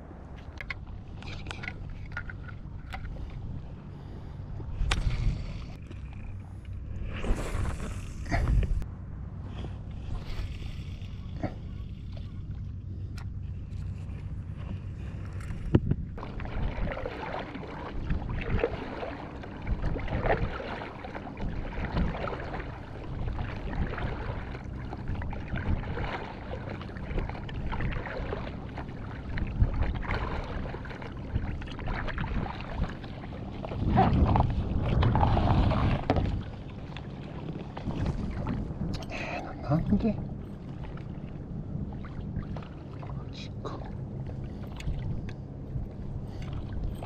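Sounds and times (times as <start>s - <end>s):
wind rumble on microphone: 0.0s - 47.0s
paddle sloshing in water: 9.5s - 38.9s, 40.2s - 47.0s
water splashing: 16.2s - 45.4s.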